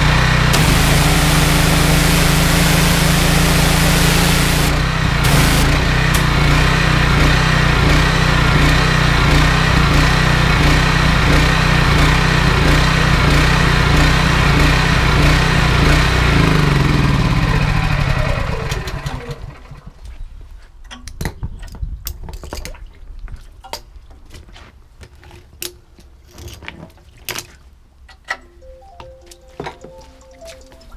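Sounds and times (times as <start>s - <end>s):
petrol engine running: 0.0s - 19.8s.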